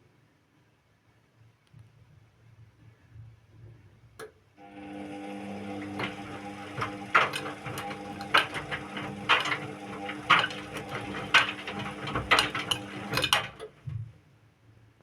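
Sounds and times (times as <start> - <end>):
washing machine motor hum: 4.6 - 14.0.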